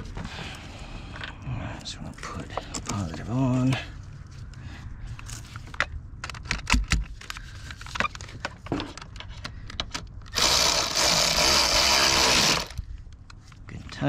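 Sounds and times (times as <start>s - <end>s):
cordless power tool running: 10.3s - 12.8s.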